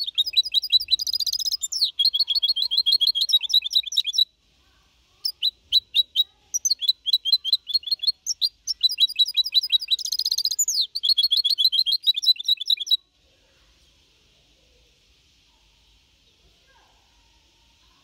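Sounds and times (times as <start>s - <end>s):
songbird singing: 0.0s - 14.0s.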